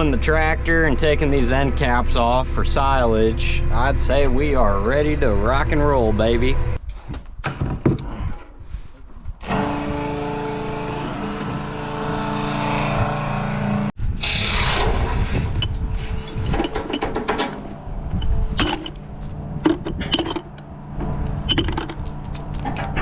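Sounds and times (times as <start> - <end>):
tractor diesel engine running: 0.0 - 6.8, 15.6 - 23.0.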